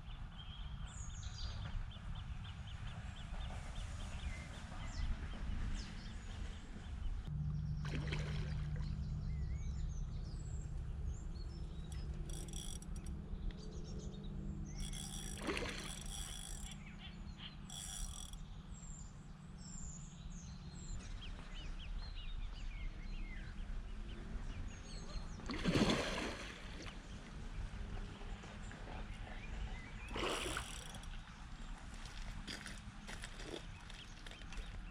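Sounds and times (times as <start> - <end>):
steady low rumble: 0.6 - 25.5
small birds chirping: 26.8 - 34.9.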